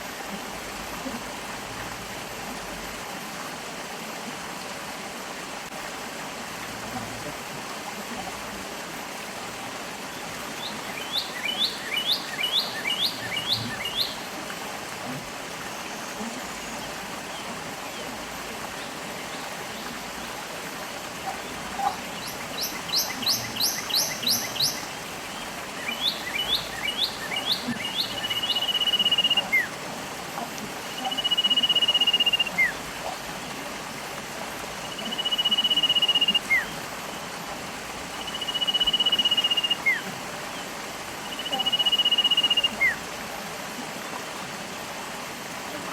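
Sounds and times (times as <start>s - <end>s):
stream water running: 0.0s - 45.9s
songbirds singing: 10.1s - 14.4s, 21.1s - 29.8s, 30.9s - 32.8s, 34.7s - 36.9s, 38.1s - 43.0s.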